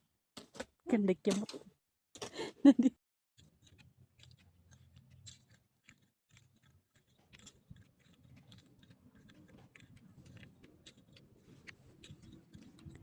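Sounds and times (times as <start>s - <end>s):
faint small clicks and rustles: 3.4s - 13.0s.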